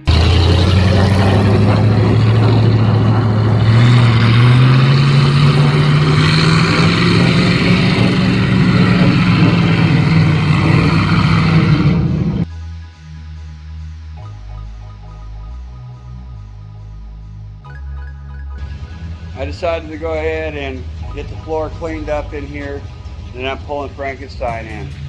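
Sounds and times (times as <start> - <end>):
engine running under load: 0.0 - 12.5, 18.6 - 25.0
rough noise: 0.0 - 12.5, 18.6 - 25.0.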